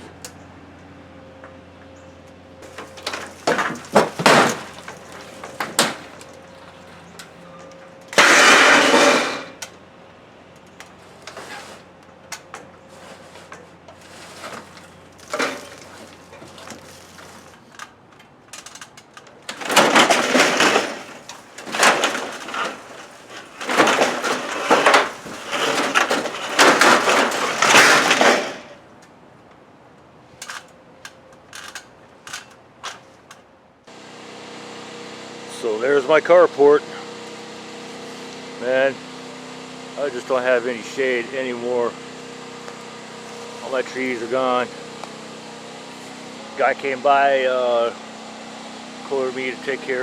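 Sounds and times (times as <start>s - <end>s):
metal carport crashing: 2.6s - 9.7s, 10.8s - 29.0s
metal scraping: 8.1s - 9.7s, 11.0s - 12.0s, 12.8s - 17.9s, 19.5s - 28.8s.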